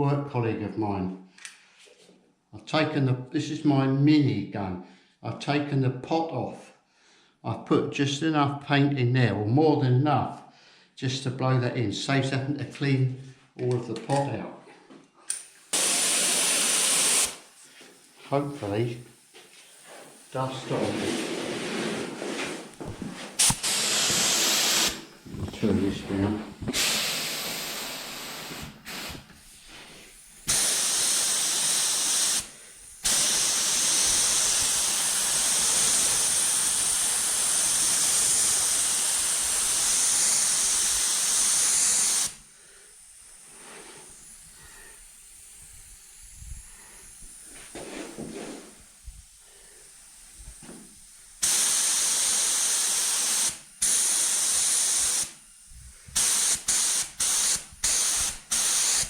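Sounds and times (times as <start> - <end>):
spray gun hissing: 15.4 - 59.0.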